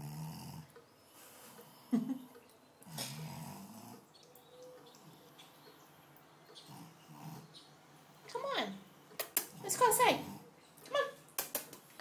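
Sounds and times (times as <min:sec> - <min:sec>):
dog snoring: 0:00.0 - 0:00.7, 0:02.8 - 0:04.1, 0:06.6 - 0:07.5.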